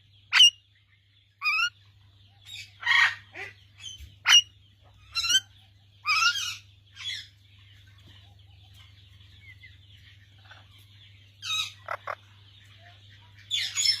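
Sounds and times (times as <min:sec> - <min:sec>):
parrot calls: 0:01.4 - 0:01.8, 0:04.2 - 0:04.5, 0:06.0 - 0:06.5.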